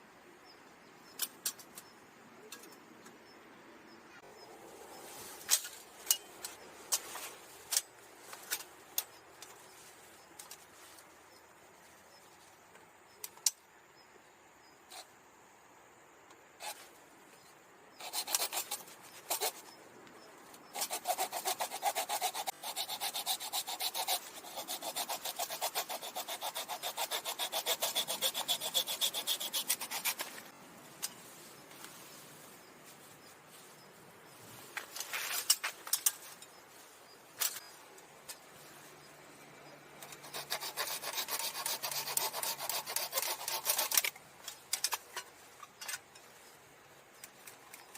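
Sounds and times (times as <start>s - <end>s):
handsaw cutting wood: 18.0s - 19.6s, 20.7s - 30.5s, 40.0s - 44.1s.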